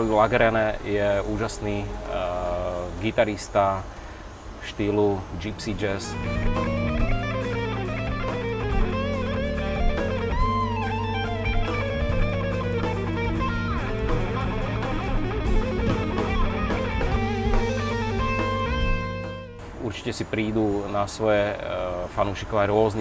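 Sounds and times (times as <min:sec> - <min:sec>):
sustained bass notes: 0:00.0 - 0:03.1, 0:05.8 - 0:19.8
plucked guitar: 0:06.1 - 0:19.6.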